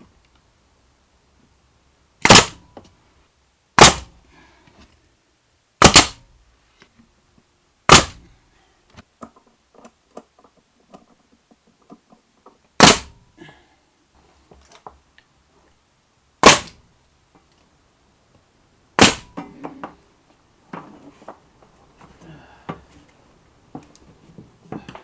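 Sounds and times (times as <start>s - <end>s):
nail gun shots into wood: 2.2s - 2.7s, 3.8s - 4.2s, 5.8s - 6.3s, 7.9s - 8.3s, 12.8s - 13.2s, 16.4s - 16.8s, 19.0s - 19.4s.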